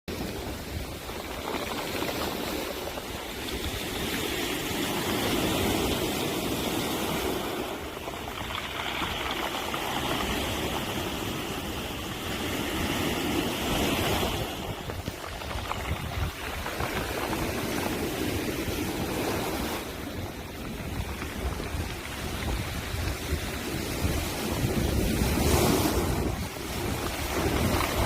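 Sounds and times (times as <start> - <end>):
sea waves washing on shore: 0.1 - 28.0.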